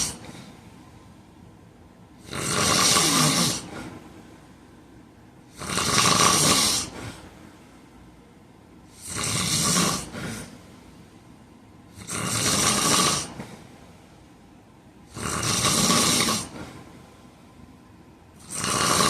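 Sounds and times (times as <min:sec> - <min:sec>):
man snoring loudly: 0:00.0 - 0:00.3, 0:02.2 - 0:03.8, 0:05.5 - 0:07.0, 0:08.9 - 0:10.5, 0:11.9 - 0:13.4, 0:15.1 - 0:16.6, 0:18.4 - 0:19.0.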